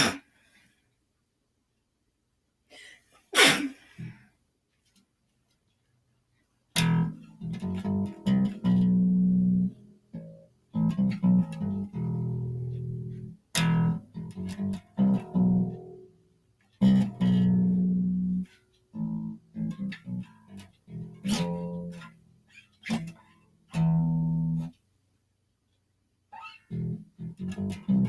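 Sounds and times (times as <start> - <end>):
bass: 6.7 - 24.9, 26.3 - 28.0
plucked guitar: 6.8 - 24.8, 26.4 - 28.0.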